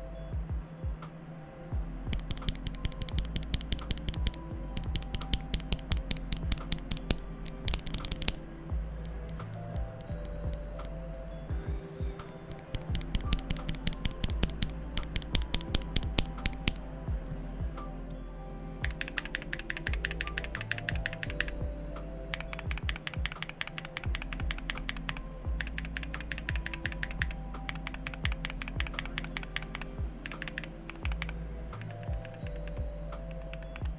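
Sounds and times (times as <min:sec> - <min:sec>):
soft background music: 0:00.0 - 0:33.9
mechanical keyboard typing: 0:02.1 - 0:08.5, 0:12.4 - 0:16.8, 0:18.8 - 0:21.6, 0:25.8 - 0:31.3.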